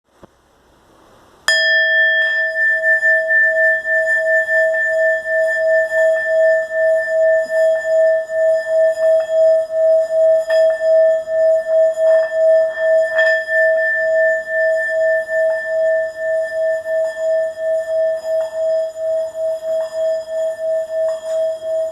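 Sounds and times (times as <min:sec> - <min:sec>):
singing bowl ringing: 0:01.5 - 0:21.9.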